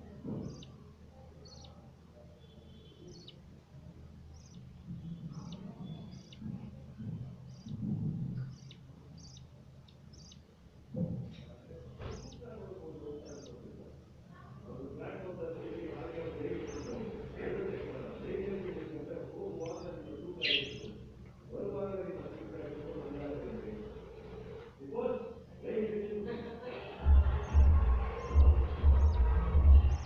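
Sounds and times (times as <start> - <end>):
budgies chirping: 0.3 - 0.8, 1.4 - 1.8, 2.8 - 3.5, 4.2 - 10.6, 12.0 - 13.8, 15.2 - 21.1, 27.2 - 30.0.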